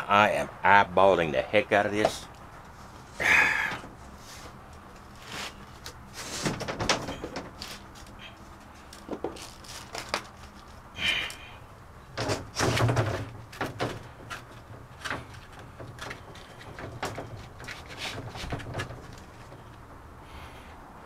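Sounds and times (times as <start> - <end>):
plywood and tools knocking: 12.2 - 19.7.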